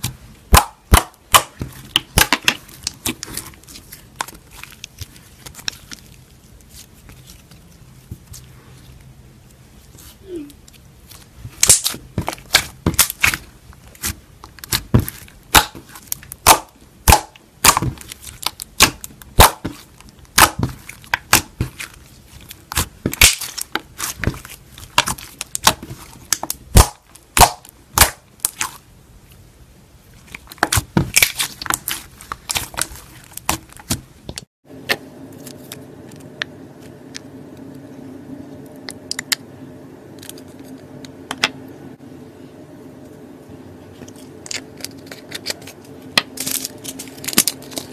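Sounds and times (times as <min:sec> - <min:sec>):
steady low hum: 0:00.0 - 0:47.9.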